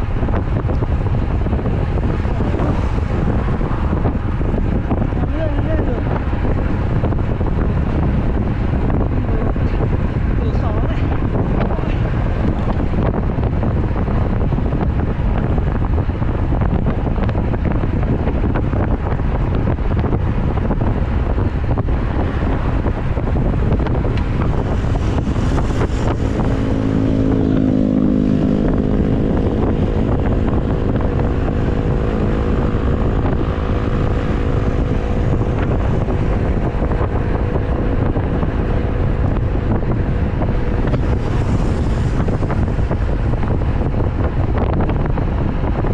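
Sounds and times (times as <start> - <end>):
wind buffeting microphone: 0.0 - 45.9
humming tone with overtones: 23.1 - 45.9.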